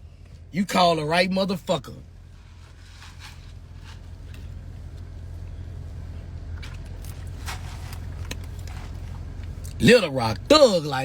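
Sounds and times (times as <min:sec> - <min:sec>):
vehicle rumble: 0:00.0 - 0:11.0
faint rustles and clicks: 0:02.2 - 0:09.6.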